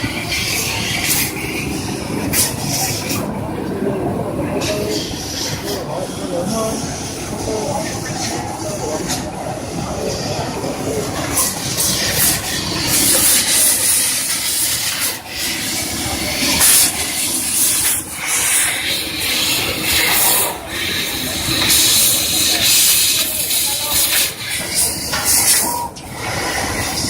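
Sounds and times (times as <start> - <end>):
laser cutting machine running: 0.0 - 27.0
assist gas hissing: 11.3 - 27.0.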